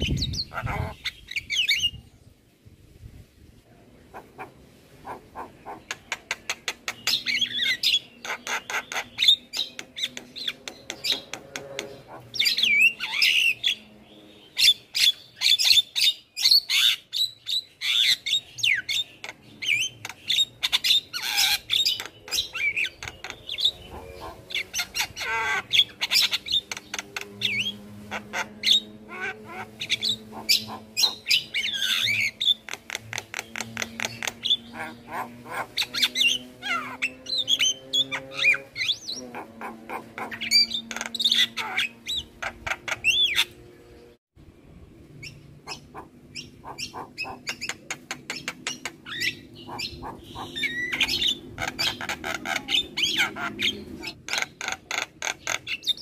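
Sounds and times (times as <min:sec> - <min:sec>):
bird singing with clicks and whistles: 0:05.4 - 0:13.9, 0:14.5 - 0:27.8, 0:29.8 - 0:39.2, 0:45.2 - 0:56.0.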